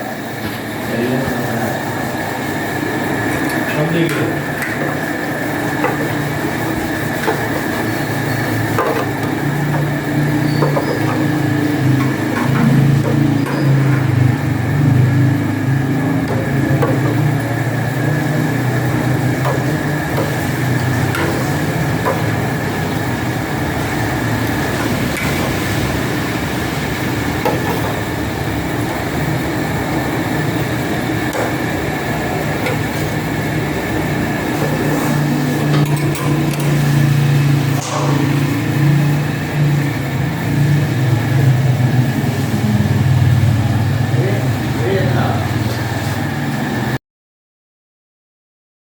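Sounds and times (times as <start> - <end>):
engine humming with high whine: 0.0 - 47.0.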